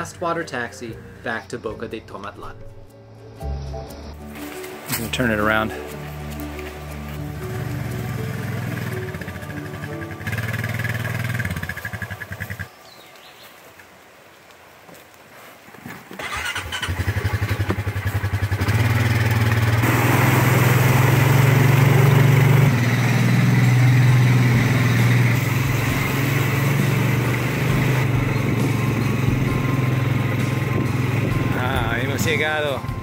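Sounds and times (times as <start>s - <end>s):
atv engine running: 4.8s - 12.8s, 16.2s - 33.0s.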